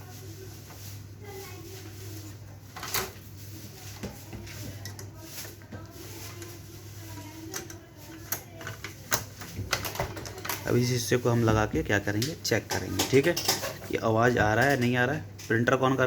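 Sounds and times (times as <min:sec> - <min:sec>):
plastic parts clicking and knocking: 0:07.5 - 0:10.8.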